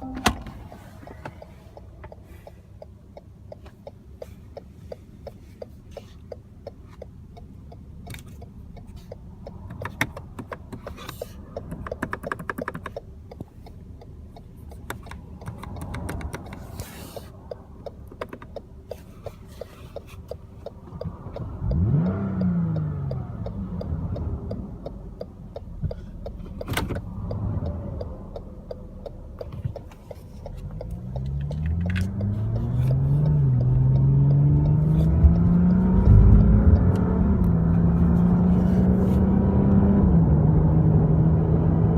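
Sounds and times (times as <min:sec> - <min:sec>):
car engine revving: 0:20.0 - 0:41.9.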